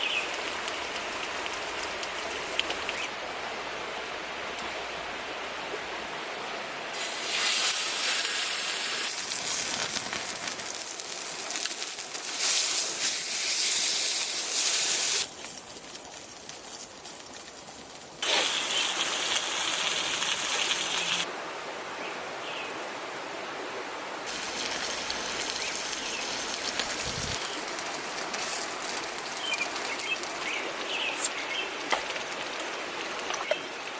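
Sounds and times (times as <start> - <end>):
campfire hiss and crackle: 0.0 - 33.9
meat sizzling on a grill: 7.0 - 21.3, 24.3 - 31.3.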